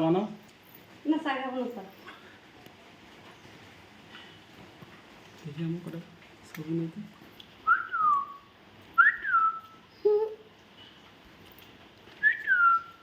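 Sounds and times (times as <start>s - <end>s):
rising and falling whistles: 7.7s - 9.8s, 12.2s - 13.0s.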